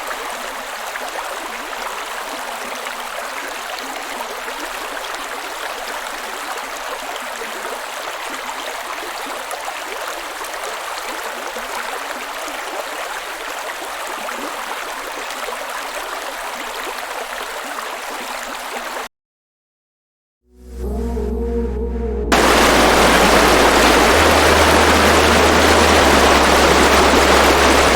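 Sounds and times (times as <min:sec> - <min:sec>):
waterfall rushing: 0:22.3 - 0:27.9.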